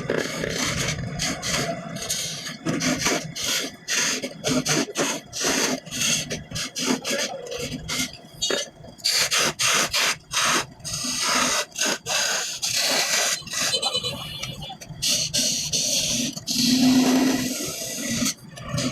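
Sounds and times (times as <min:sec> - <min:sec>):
hand tool scraping wood: 0:00.1 - 0:13.8.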